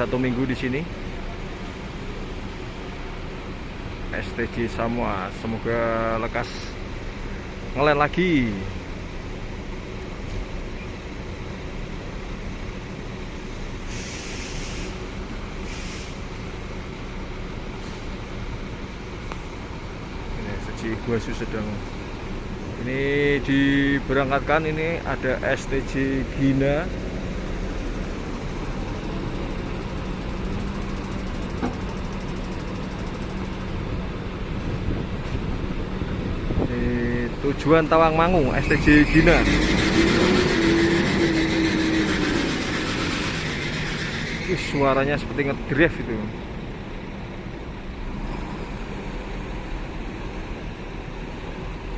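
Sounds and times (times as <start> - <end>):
diesel engine idling: 0.0 - 48.2
compressed-air hiss: 13.8 - 15.0, 15.6 - 16.3
steady droning tone: 38.0 - 46.4.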